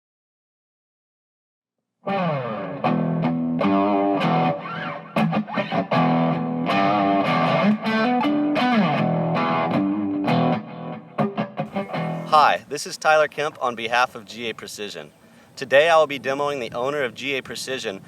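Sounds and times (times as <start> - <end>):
distorted electric guitar music: 2.1 - 12.6.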